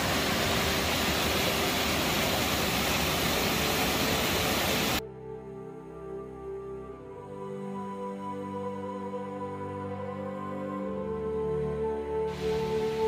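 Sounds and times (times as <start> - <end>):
waterfall rushing: 0.0 - 5.0, 12.3 - 13.0
soft background music: 5.0 - 13.0.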